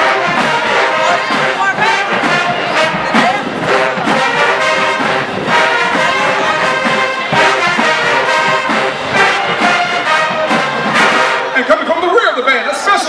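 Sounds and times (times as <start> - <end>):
marching band playing: 0.0 - 13.0.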